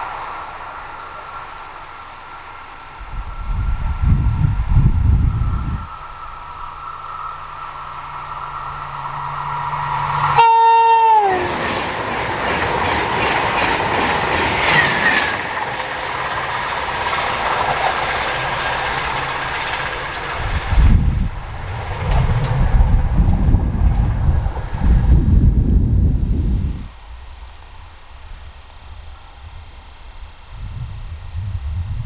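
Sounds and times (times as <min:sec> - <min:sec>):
electric train whine: 0:00.0 - 0:32.0
rushing wheel and rail noise: 0:00.0 - 0:32.0
train horn blast: 0:10.2 - 0:12.0.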